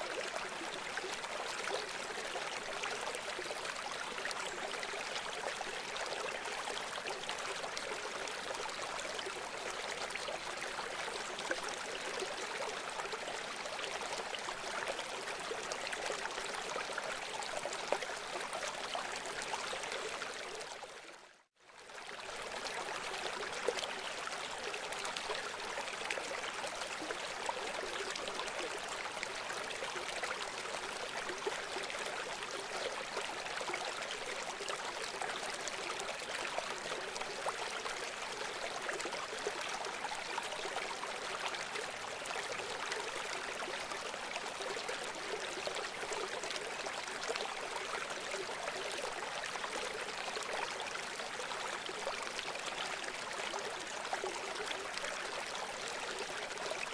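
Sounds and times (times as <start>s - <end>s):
river water flowing: 21.8s - 56.9s.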